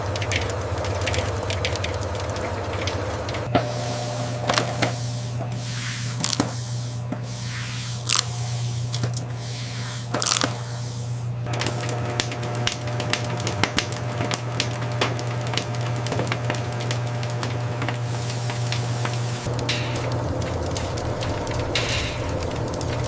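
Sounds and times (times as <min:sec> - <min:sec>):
machinery humming: 0:00.0 - 0:23.0
popcorn crackling clicks: 0:00.0 - 0:23.0
short hissing bursts: 0:03.6 - 0:11.5, 0:21.8 - 0:22.4.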